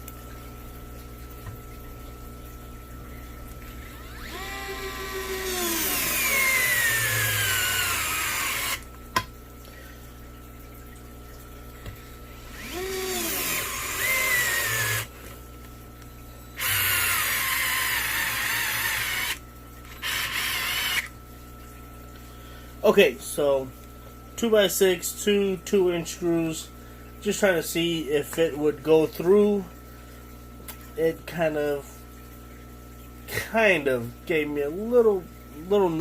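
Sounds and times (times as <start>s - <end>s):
cordless screwdriver whine: 3.9s - 8.9s, 12.5s - 15.2s, 16.6s - 21.1s.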